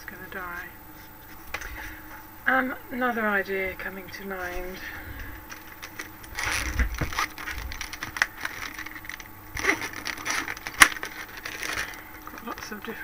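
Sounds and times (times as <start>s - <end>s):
plastic marker pens clattering: 5.8s - 12.8s.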